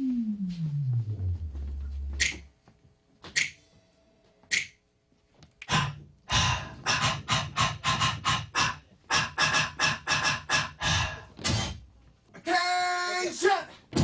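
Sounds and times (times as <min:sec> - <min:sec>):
person beatboxing: 0:05.6 - 0:11.8.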